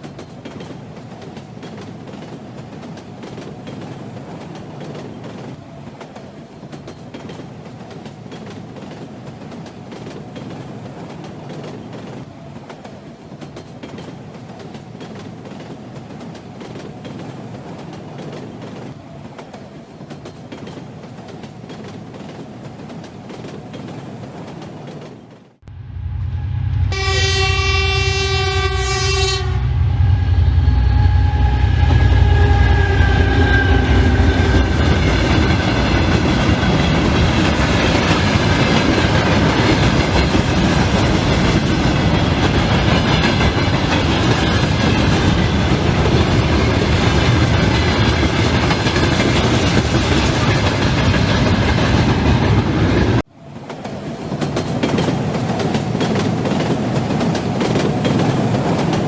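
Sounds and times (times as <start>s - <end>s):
train rumbling past: 0.0s - 59.0s
train horn blast: 25.6s - 35.2s.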